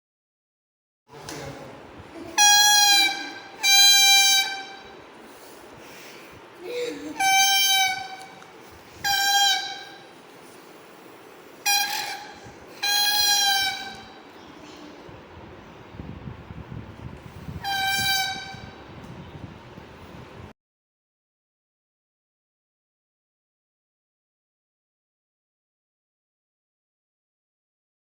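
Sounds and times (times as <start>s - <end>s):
coconut-leaf whistle blasts: 9.0s - 10.0s, 11.7s - 14.2s, 17.6s - 18.8s.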